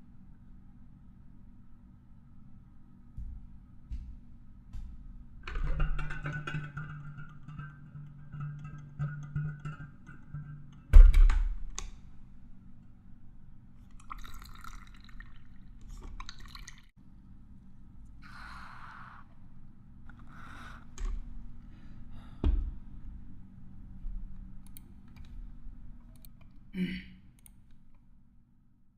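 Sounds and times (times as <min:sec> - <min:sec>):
clicks: 0:24.4 - 0:25.4.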